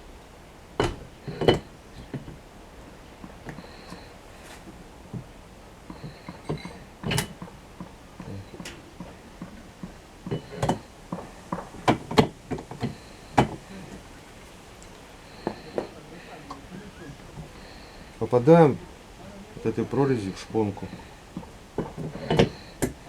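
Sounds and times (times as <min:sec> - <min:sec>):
tools and metal parts clinking: 0:00.8 - 0:02.4, 0:05.9 - 0:07.6, 0:20.7 - 0:23.0.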